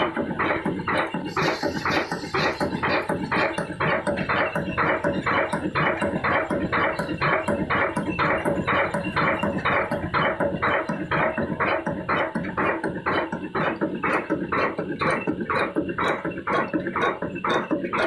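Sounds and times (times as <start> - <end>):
diesel engine running slowly: 0.0 - 5.0.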